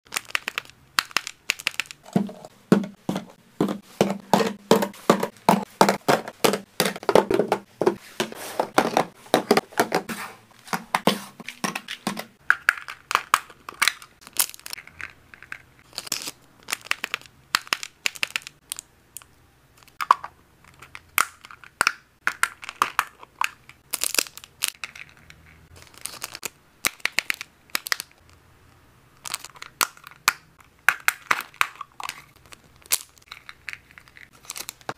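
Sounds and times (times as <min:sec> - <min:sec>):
plastic packaging crinkling: 0:00.1 - 0:02.5, 0:22.6 - 0:28.4, 0:31.4 - 0:34.9.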